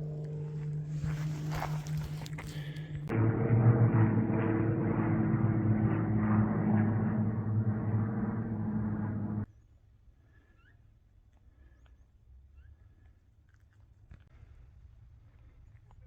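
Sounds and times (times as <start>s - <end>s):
low mechanical drone: 0.0s - 9.5s.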